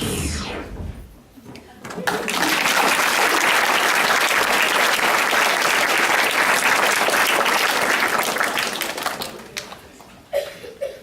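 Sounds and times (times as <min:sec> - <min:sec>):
audience applauding: 0:02.0 - 0:10.1.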